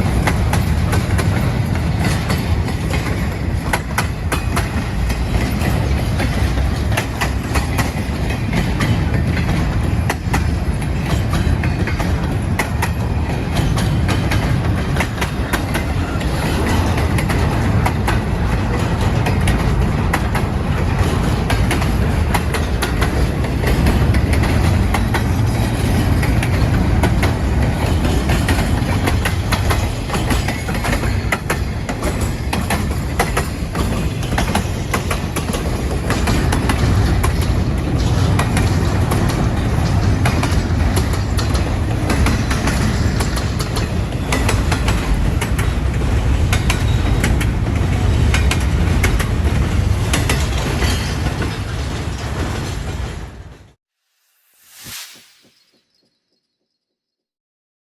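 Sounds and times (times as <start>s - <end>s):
freight train cars rolling past: 0.0s - 53.8s
wheels clicking over rail joints: 0.0s - 53.8s.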